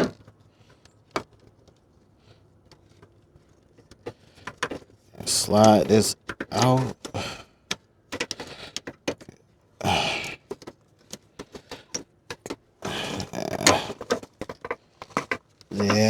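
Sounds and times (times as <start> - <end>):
plastic parts clicking and knocking: 3.8 - 9.3, 10.1 - 16.0
plastic scraping rubs: 11.5 - 16.0.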